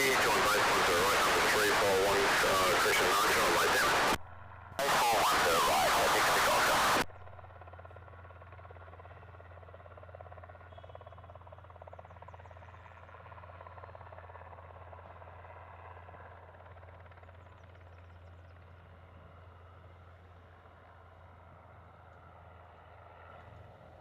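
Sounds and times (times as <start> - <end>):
aircraft engine drone: 0.0 - 8.3.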